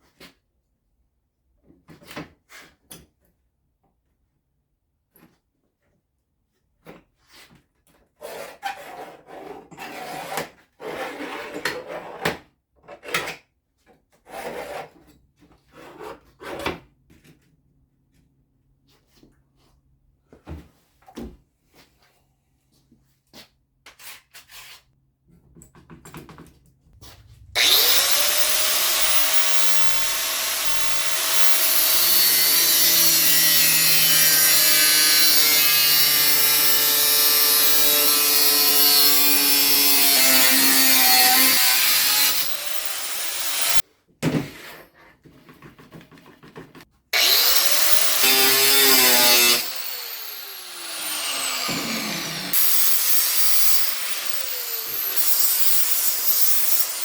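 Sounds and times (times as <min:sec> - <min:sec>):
angle grinder on steel: 0:27.1 - 0:43.8, 0:47.2 - 0:57.0.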